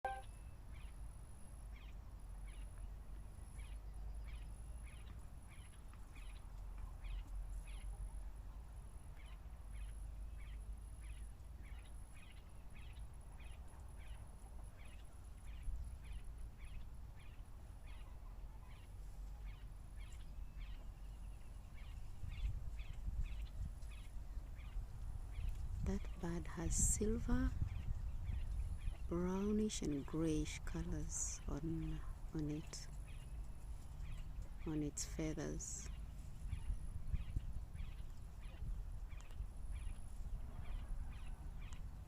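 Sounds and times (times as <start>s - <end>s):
faint high-pitched tone: 0.0s - 0.3s
bird calling with high notes: 0.0s - 0.5s.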